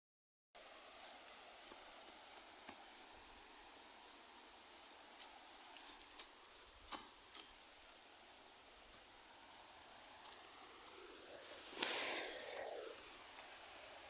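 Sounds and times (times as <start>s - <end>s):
distant water rushing: 0.6s - 14.0s
light clicks and rustles: 4.4s - 8.0s.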